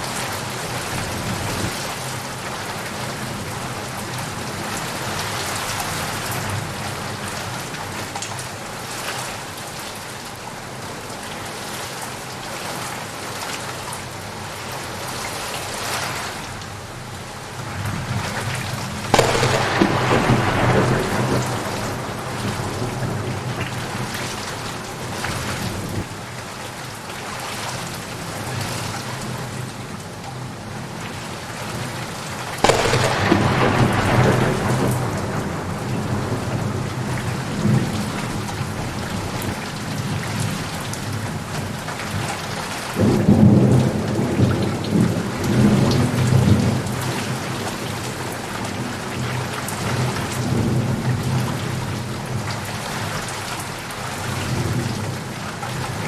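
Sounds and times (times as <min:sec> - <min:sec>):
thunder claps and rumble: 0:00.0 - 0:02.4, 0:17.8 - 0:26.1, 0:32.6 - 0:42.3, 0:43.0 - 0:52.5
heavy rain: 0:00.0 - 0:56.0.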